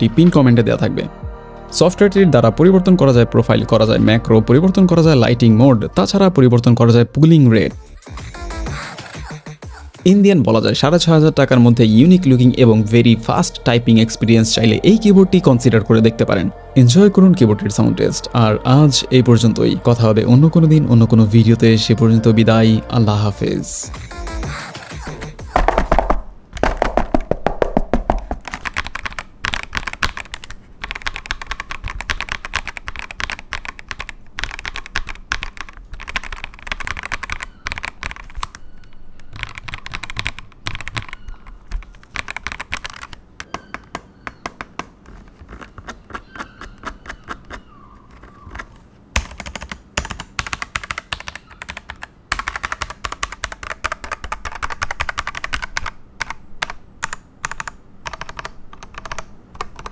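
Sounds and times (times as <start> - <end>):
mechanical keyboard typing: 26.6 - 59.9.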